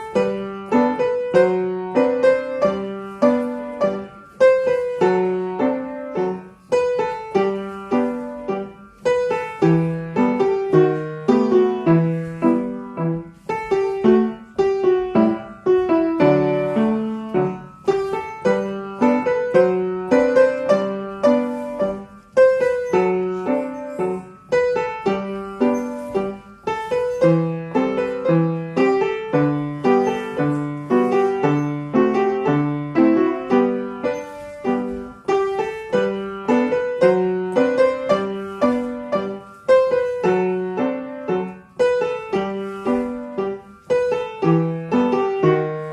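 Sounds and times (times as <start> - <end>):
piano playing lively tune: 0.0 - 45.9.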